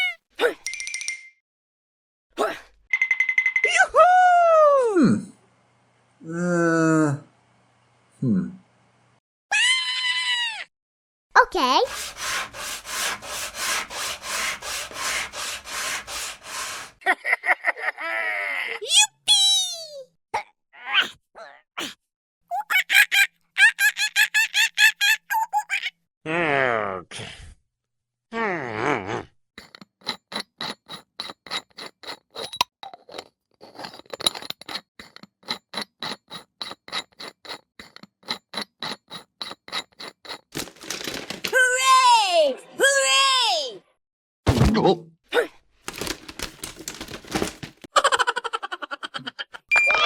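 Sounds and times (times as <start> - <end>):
rhythmic rubbing strokes: 11.8 - 17.0.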